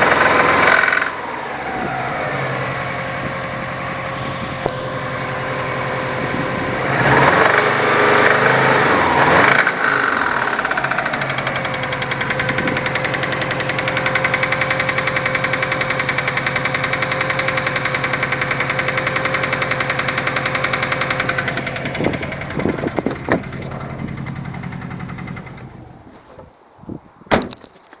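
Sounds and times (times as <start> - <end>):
car engine knocking: 0.0 - 1.2, 9.4 - 25.8.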